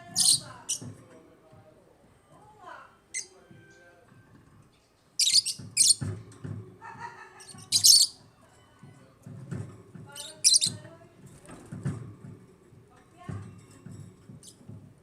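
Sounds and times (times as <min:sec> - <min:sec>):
lovebirds chirping shrilly: 0:00.2 - 0:00.8, 0:05.2 - 0:06.0, 0:07.6 - 0:08.2, 0:10.2 - 0:10.8
lovebirds chattering calls: 0:00.2 - 0:00.9, 0:05.2 - 0:06.1, 0:07.4 - 0:08.2, 0:10.2 - 0:10.8.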